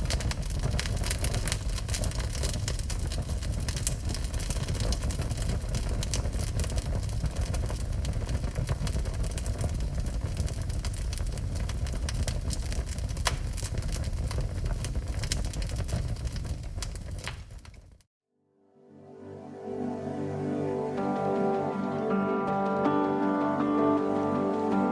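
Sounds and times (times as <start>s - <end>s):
fire crackling and popping: 0.0s - 18.1s.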